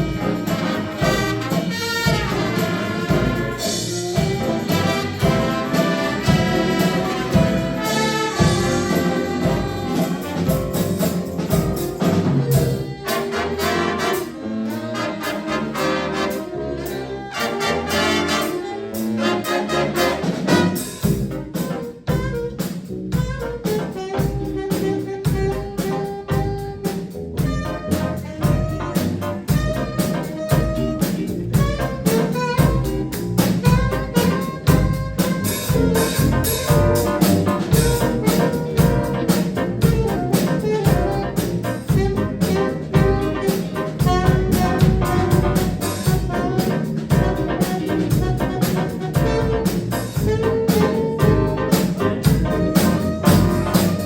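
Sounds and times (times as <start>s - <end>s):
jazz band playing: 0.0s - 54.0s
rhythm section beat: 0.0s - 54.0s.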